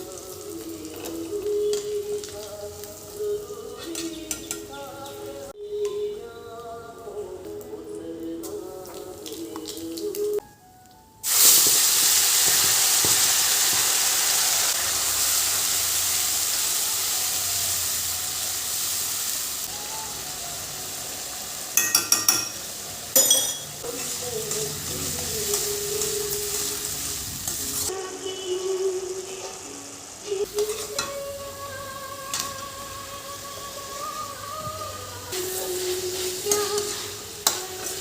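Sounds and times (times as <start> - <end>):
food sizzling in hot oil: 0.0 - 5.5, 11.2 - 38.0
spoon scraping in a pan: 35.8 - 38.0.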